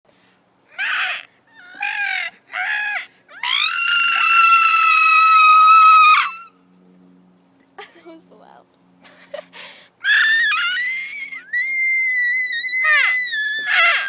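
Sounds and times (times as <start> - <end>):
girl's high-pitched scream: 0.8 - 6.5, 10.0 - 14.0
girl squealing: 10.0 - 14.0.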